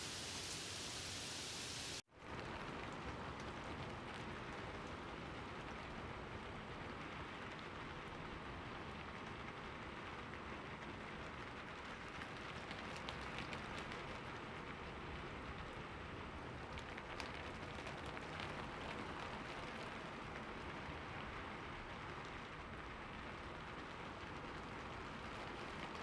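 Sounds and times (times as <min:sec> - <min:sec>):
steady rain hiss: 0:00.0 - 0:26.0
raindrops ticking: 0:16.6 - 0:21.1.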